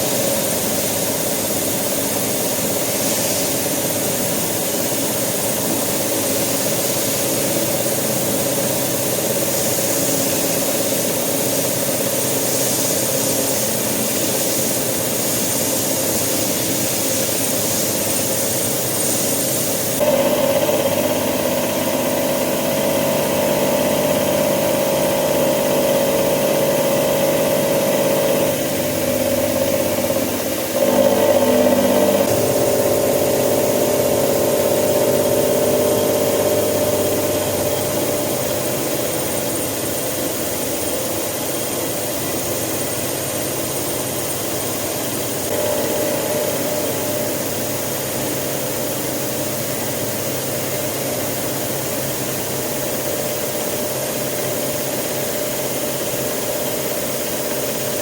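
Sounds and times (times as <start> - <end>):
milling machine cutting drone: 20.0 - 39.8, 44.0 - 49.4.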